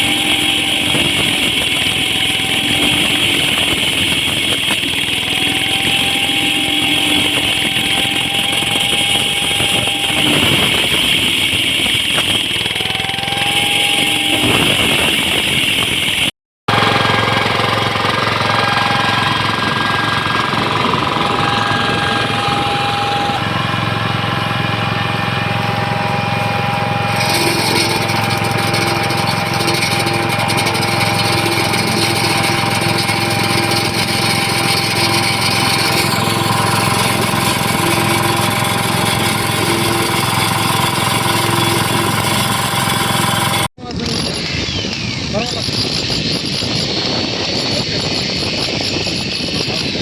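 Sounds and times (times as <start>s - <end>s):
road texturing machine engine hum: 0.0s - 50.0s.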